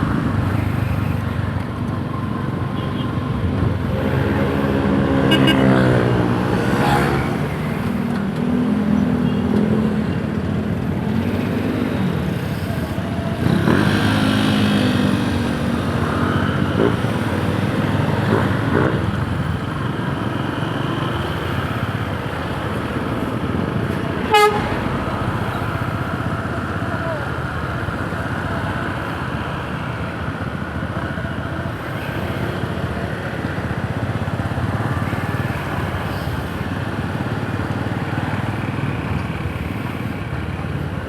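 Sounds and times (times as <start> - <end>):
horn toot: 24.3 - 24.9.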